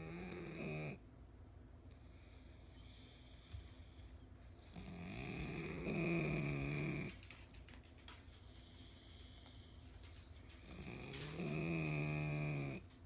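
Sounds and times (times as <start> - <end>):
dog snoring: 0.0 - 1.0, 1.9 - 7.3, 10.4 - 13.0
dog breathing: 1.9 - 13.0.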